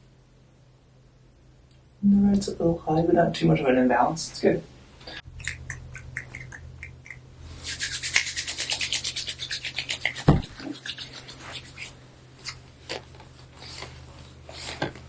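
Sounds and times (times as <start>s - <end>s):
steady low hum: 0.0s - 15.0s
scratchy rubbing strokes: 7.4s - 14.9s.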